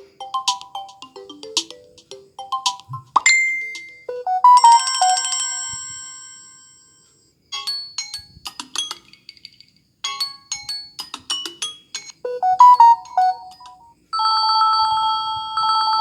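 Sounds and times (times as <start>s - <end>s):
phone ringtone bell-like notes: 0.0s - 6.9s, 12.2s - 16.0s.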